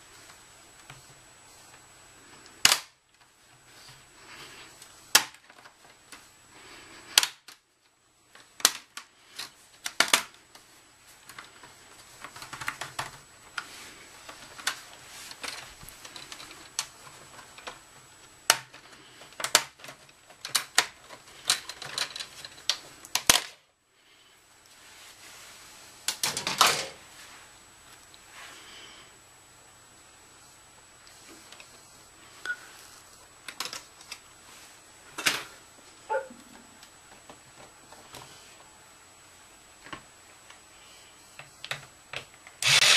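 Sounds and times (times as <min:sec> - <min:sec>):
handling noises: 0:00.0 - 0:23.4
plastic clicks and snaps: 0:07.1 - 0:07.6.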